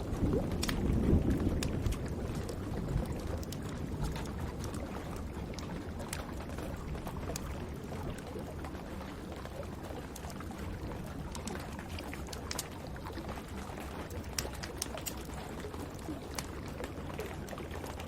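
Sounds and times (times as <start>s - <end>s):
rain: 0.0s - 18.0s
wood fire crackling: 0.0s - 18.0s.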